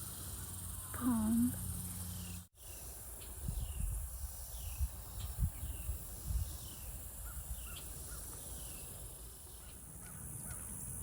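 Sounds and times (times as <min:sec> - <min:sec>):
steady high hiss: 0:00.0 - 0:11.0
wind rumble on microphone: 0:03.2 - 0:08.7
small bird calling: 0:04.5 - 0:11.0.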